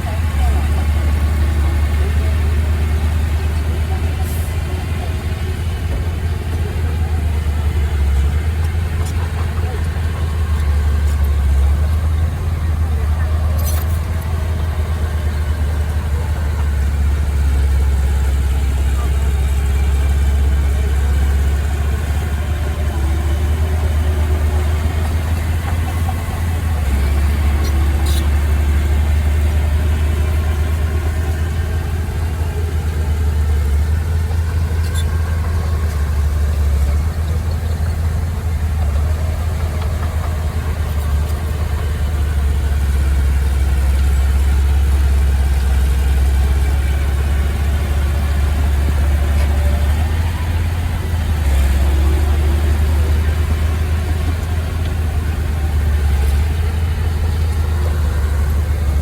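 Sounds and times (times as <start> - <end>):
heavy machine engine rumbling: 0.0 - 59.0.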